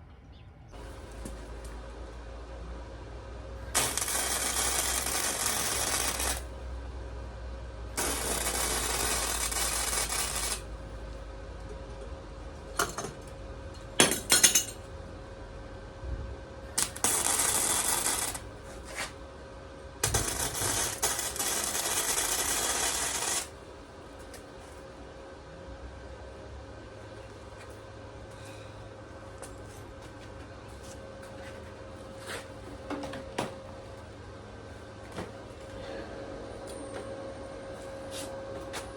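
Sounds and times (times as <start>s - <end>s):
welding arc crackling: 3.6s - 6.7s, 8.0s - 10.9s, 16.8s - 18.8s, 20.0s - 23.6s.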